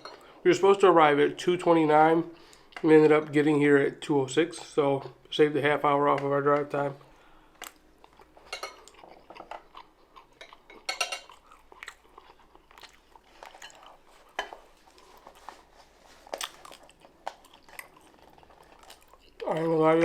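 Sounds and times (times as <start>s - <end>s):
person chewing crispy food: 7.1s - 19.7s.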